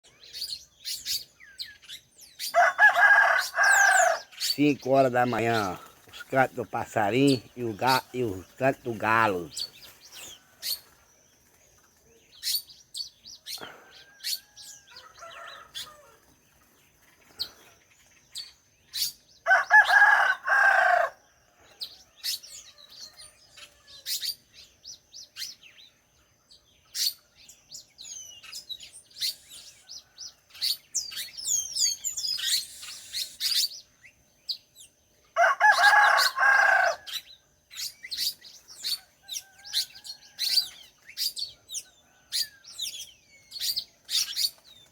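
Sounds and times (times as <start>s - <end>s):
small birds chirping: 0.0s - 44.9s
rooster crowing: 2.4s - 9.6s, 13.6s - 16.3s, 19.4s - 24.2s, 35.3s - 37.2s, 38.8s - 40.8s, 41.7s - 43.0s.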